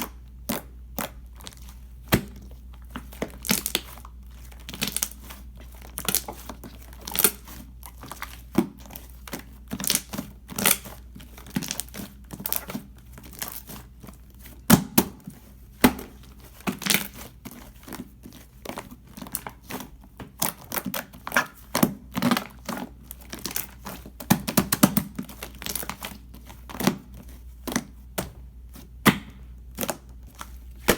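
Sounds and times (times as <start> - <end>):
slime crackling and popping: 0.0 - 15.2, 18.1 - 27.2.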